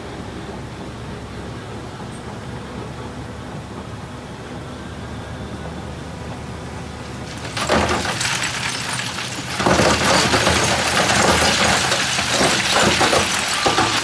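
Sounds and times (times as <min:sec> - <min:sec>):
low engine hum: 0:00.0 - 0:07.4
gravel and rocks clattering: 0:07.0 - 0:14.0.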